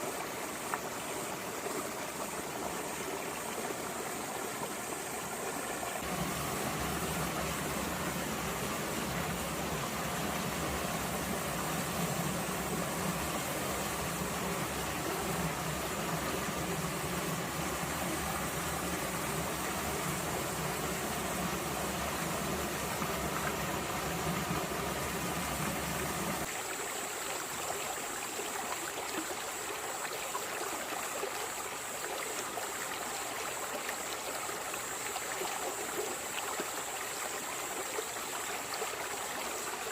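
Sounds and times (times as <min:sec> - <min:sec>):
water running over rocks: 0:00.0 - 0:39.9.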